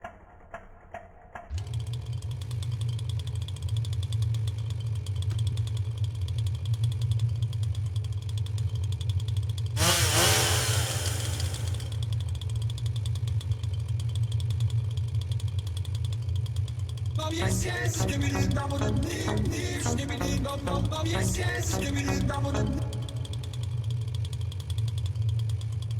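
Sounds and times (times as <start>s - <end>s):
loud hiss with falling tones: 9.8s - 11.9s.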